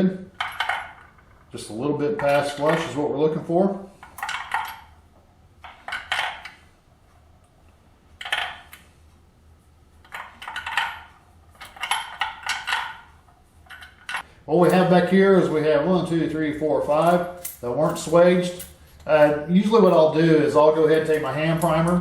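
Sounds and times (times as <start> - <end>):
brass cartridge cases clinking: 0.4 - 1.3, 10.1 - 14.9, 16.9 - 20.3.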